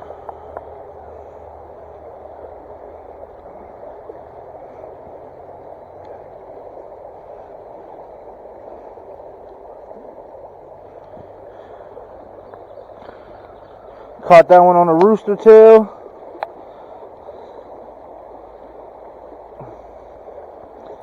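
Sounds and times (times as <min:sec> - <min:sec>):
stream rushing: 0:00.0 - 0:21.0.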